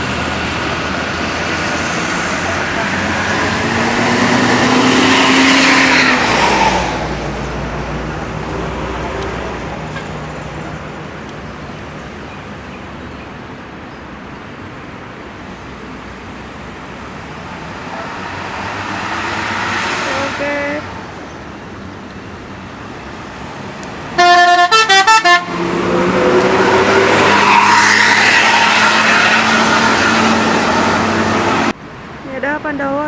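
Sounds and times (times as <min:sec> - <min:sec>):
vehicle engine passing: 0:00.0 - 0:10.8, 0:15.6 - 0:24.6, 0:25.3 - 0:31.8
traffic noise: 0:00.0 - 0:33.0.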